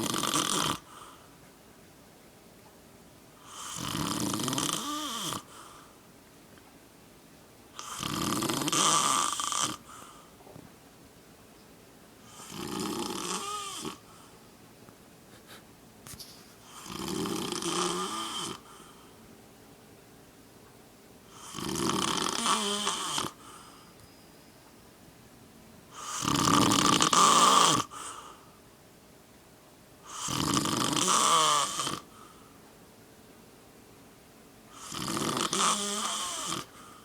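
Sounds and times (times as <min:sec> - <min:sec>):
man snoring: 0:00.0 - 0:00.9, 0:03.4 - 0:05.5, 0:07.8 - 0:09.9, 0:12.3 - 0:14.0, 0:16.7 - 0:18.7, 0:21.3 - 0:23.4, 0:25.9 - 0:28.0, 0:30.1 - 0:32.1, 0:34.8 - 0:36.8
quiet breathing: 0:00.7 - 0:01.6, 0:04.8 - 0:06.2, 0:09.3 - 0:10.8, 0:13.2 - 0:14.6, 0:15.3 - 0:19.4, 0:22.4 - 0:24.7, 0:27.8 - 0:28.8, 0:32.0 - 0:32.9, 0:35.8 - 0:37.0.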